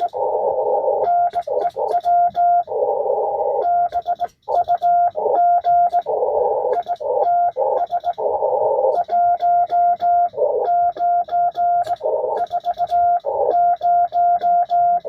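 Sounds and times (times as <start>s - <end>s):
radio band hiss: 0.0s - 3.6s, 4.2s - 9.2s, 11.8s - 13.5s
morse code tone: 0.0s - 15.0s.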